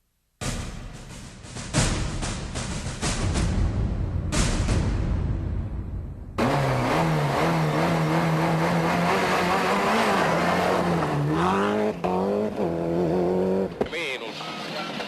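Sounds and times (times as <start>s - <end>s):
road and tyre noise: 6.4s - 15.0s.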